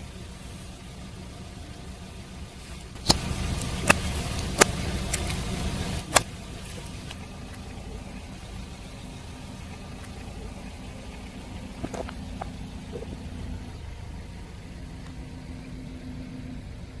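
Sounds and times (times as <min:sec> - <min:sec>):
car engine rumbling: 0:00.0 - 0:17.0
sharp cracks: 0:03.0 - 0:07.8.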